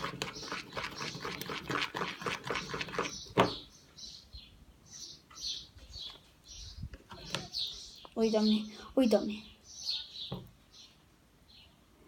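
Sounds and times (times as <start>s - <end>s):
slime squelching by hand: 0.0s - 3.4s.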